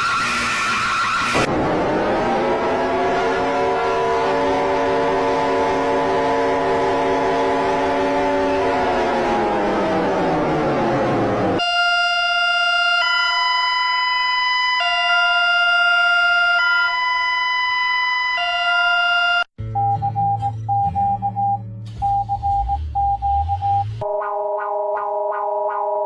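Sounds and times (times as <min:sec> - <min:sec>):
noise sliding down in pitch: 0:00.0 - 0:11.6
two-tone hi-lo siren: 0:00.0 - 0:19.5, 0:23.5 - 0:26.0
morse code beeps: 0:18.4 - 0:25.2.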